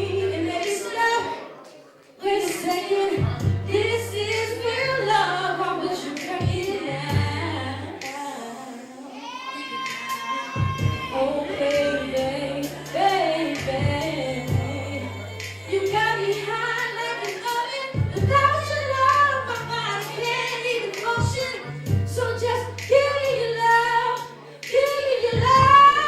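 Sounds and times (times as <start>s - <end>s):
woman singing: 0.0s - 1.4s, 2.2s - 26.0s
backing track with bass and kick drum: 3.2s - 4.6s, 6.4s - 7.6s, 10.6s - 12.9s, 13.5s - 16.5s, 18.0s - 23.6s, 24.7s - 26.0s.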